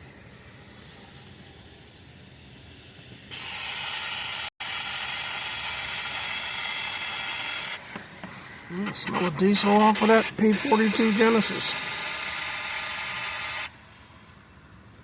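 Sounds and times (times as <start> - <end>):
radio scanner static hiss: 3.3 - 13.8.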